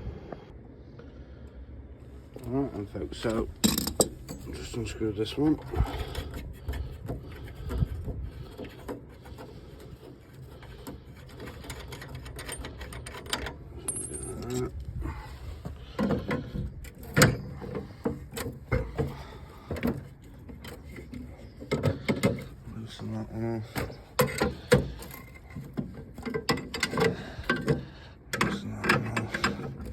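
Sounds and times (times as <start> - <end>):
spanner clinks and scrapes: 3.5 - 4.9, 5.8 - 14.8.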